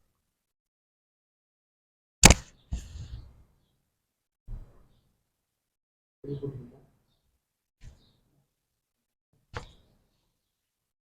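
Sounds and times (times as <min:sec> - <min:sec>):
sharp knock: 0:02.2 - 0:02.5.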